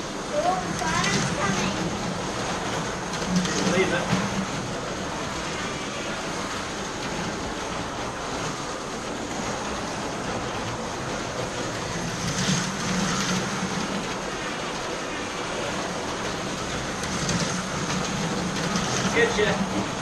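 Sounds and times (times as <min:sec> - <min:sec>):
slot car tyres rattling on track: 0:00.0 - 0:20.0.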